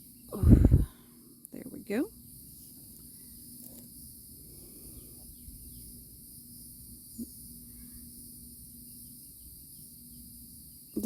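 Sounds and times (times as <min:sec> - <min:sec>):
steady high hiss: 0:00.0 - 0:11.0
low hum: 0:00.3 - 0:01.0.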